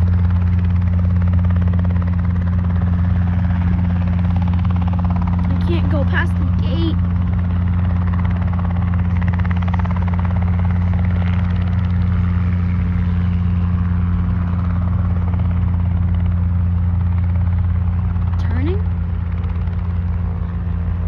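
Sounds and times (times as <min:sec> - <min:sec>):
helicopter low drone: 0:00.0 - 0:21.0.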